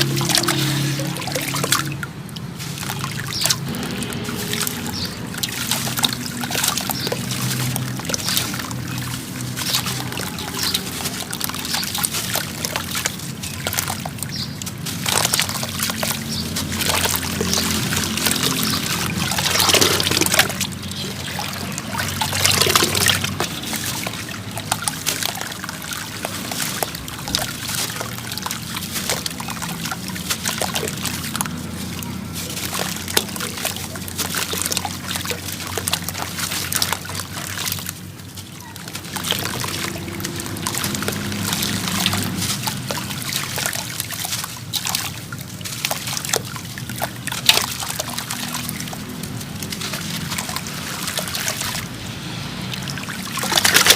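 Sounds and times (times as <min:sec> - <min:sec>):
water sloshing and trickling: 0:00.0 - 0:53.9
wet cement crumbling in water: 0:00.0 - 0:53.9.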